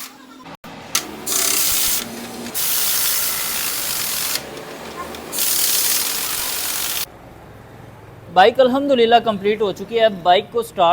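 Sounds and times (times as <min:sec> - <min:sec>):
hissing spray bursts: 0:00.9 - 0:07.1.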